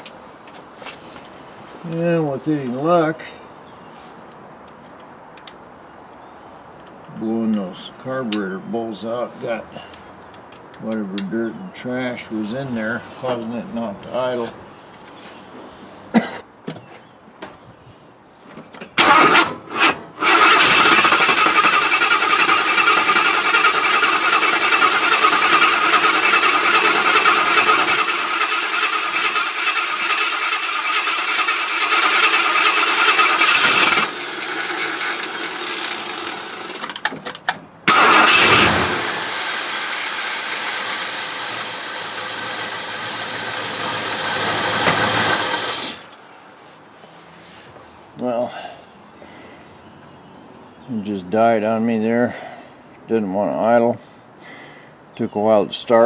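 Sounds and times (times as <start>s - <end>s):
engine running and idling roughly: 19.0s - 36.9s, 37.9s - 46.1s
engine cranking: 19.0s - 37.1s, 37.9s - 46.1s.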